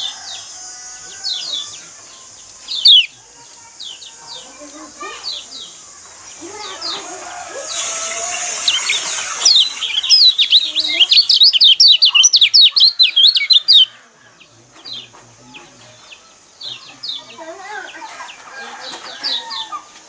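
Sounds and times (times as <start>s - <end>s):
high twittering bird chirps: 0.0s - 20.0s
faint lower bird calls: 1.0s - 18.2s
hiss: 6.2s - 9.9s.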